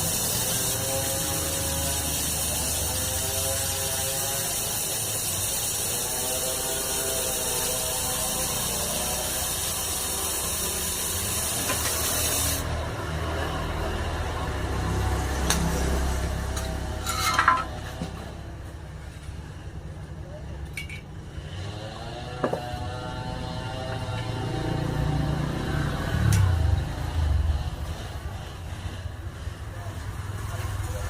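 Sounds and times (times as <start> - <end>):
strong hiss of gas jet: 0.0 - 12.7.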